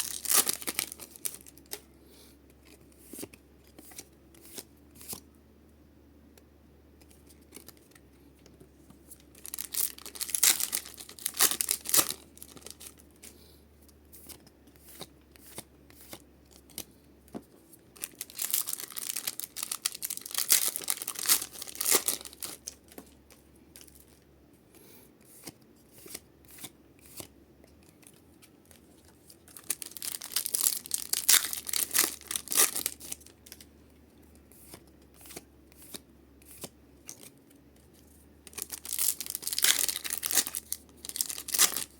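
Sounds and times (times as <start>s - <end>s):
foil wrappers ripping: 0.0s - 1.7s, 9.4s - 13.0s, 18.0s - 22.8s, 29.5s - 33.6s, 38.5s - 41.9s
cards rustling: 14.1s - 24.2s, 34.4s - 41.9s.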